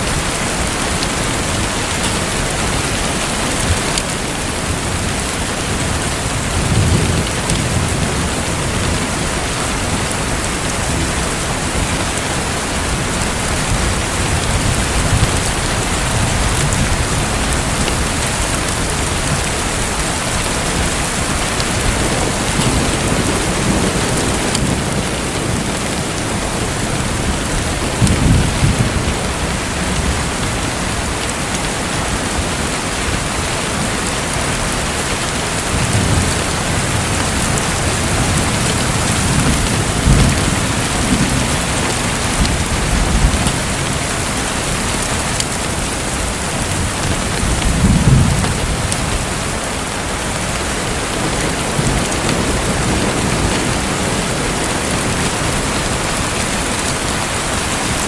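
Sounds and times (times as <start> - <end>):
rushing water: 0.0 - 58.0.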